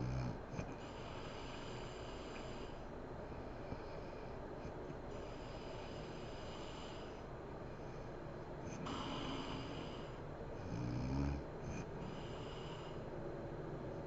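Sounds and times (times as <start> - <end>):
woman snoring: 0.0 - 0.8, 8.7 - 13.0
woman breathing heavily: 0.6 - 10.8, 11.4 - 13.8.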